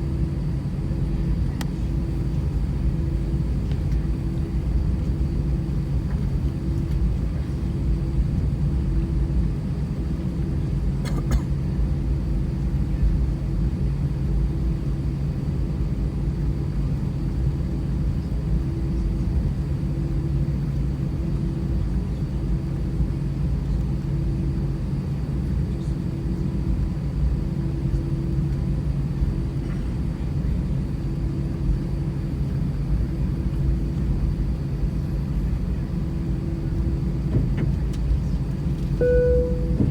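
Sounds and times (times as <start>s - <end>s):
jet engine cabin rumble: 0.0s - 39.9s
small click: 1.6s - 1.8s.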